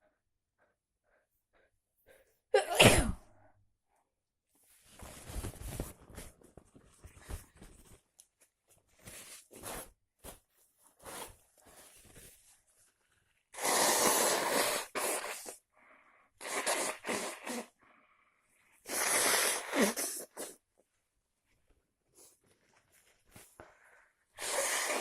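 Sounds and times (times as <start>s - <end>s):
person sneezing loudly: 2.6s - 3.3s
sniffs and breaths: 13.6s - 20.6s, 22.1s - 25.0s.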